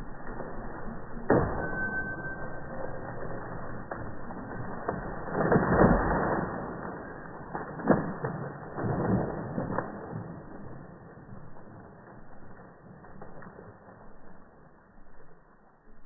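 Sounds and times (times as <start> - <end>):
wood creaking and cracking: 2.4 - 10.1.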